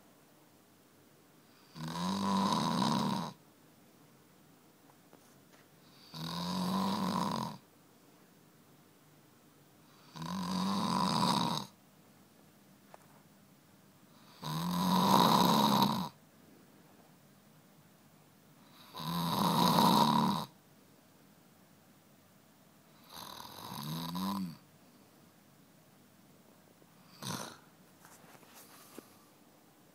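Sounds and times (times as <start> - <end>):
person snoring: 1.5 - 3.4, 5.8 - 7.6, 9.9 - 11.8, 14.2 - 16.2, 18.6 - 20.6, 23.0 - 24.6, 27.0 - 27.7.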